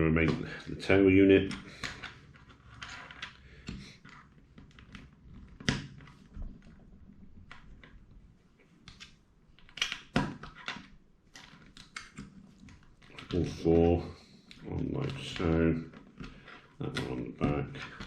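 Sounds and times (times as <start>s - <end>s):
plastic parts clicking: 8.8s - 13.6s.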